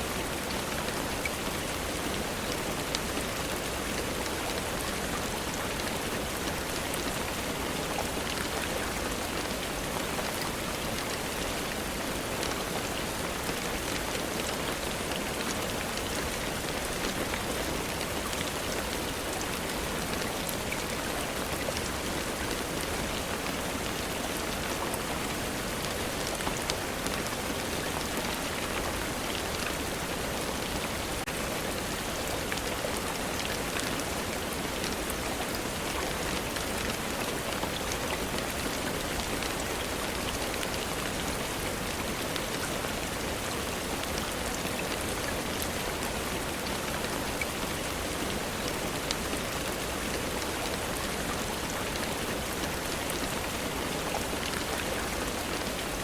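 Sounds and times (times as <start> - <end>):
rain falling: 0.0 - 56.0.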